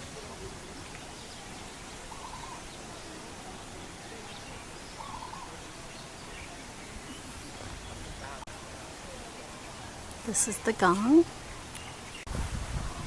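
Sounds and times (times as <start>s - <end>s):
bird calling: 0.0s - 8.4s
steady background hiss: 0.0s - 13.0s.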